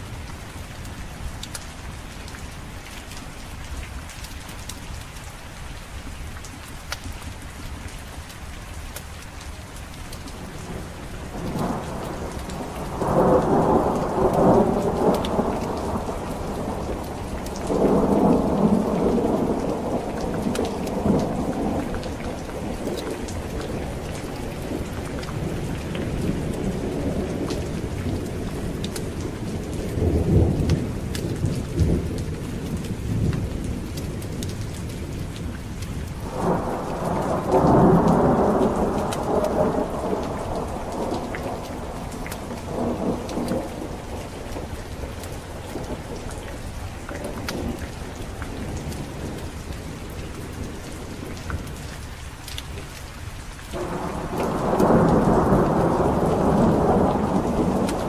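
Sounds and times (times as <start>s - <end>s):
heavy rain: 0.0s - 58.0s
rolling thunder: 10.7s - 34.7s, 36.2s - 51.3s, 53.8s - 58.0s.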